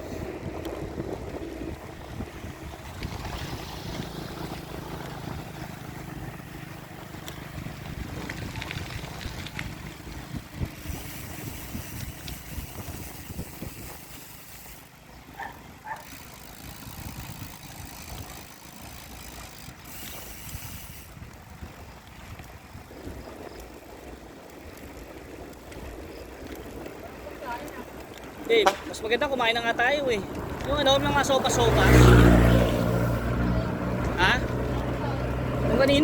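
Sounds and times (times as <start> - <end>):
wind while cycling: 0.0 - 36.0.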